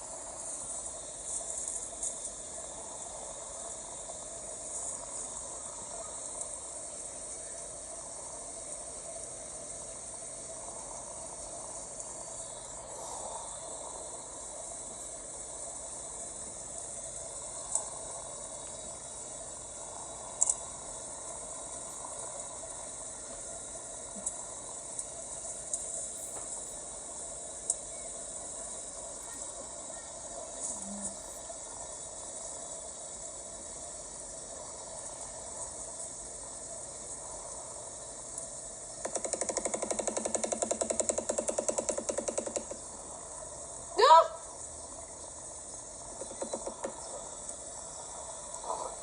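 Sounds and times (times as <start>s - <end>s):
high-pitched insect chirring: 0.0s - 37.7s, 38.4s - 49.0s
sharp clicks: 20.3s - 20.6s, 38.3s - 42.9s.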